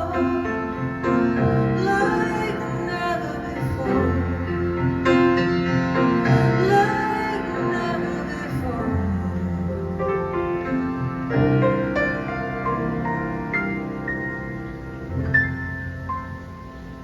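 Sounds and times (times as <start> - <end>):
woman singing: 0.0 - 4.9, 6.1 - 10.1
piano chords: 0.0 - 17.0.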